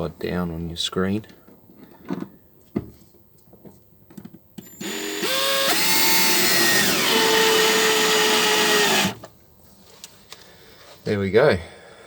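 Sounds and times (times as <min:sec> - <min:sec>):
power drill motor whine: 0:04.6 - 0:09.2.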